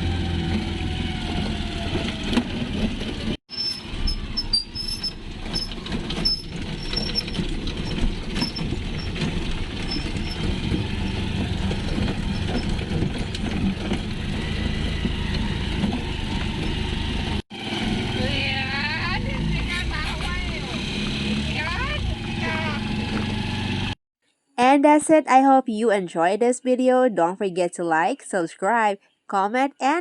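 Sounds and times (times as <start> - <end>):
motorcycle engine running: 0.0 - 24.0
road rumble: 0.0 - 24.0.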